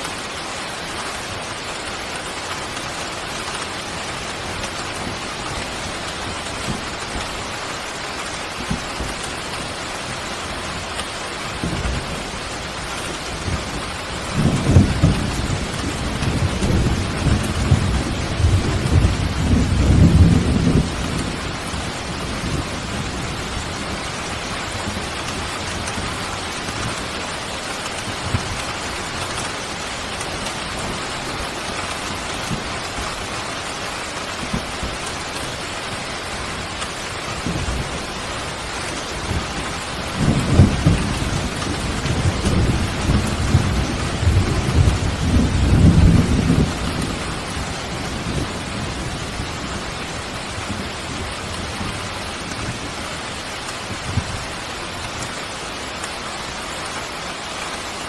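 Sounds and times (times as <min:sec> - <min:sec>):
heavy rain: 0:00.0 - 0:58.0
thunder rumbling: 0:11.6 - 0:33.4, 0:34.3 - 0:54.6.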